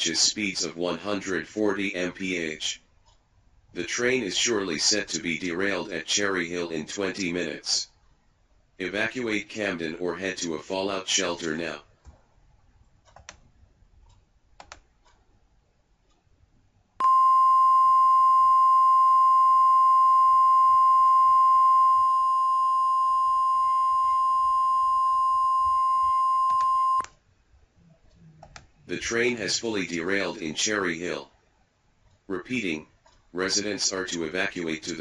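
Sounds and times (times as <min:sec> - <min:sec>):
faint clicks: 0:03.0 - 0:03.2, 0:12.0 - 0:15.4.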